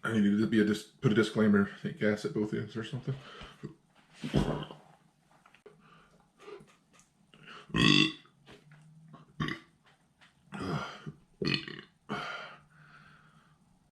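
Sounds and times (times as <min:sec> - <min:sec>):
man burping: 0:07.6 - 0:08.2, 0:09.4 - 0:09.7, 0:10.5 - 0:12.6.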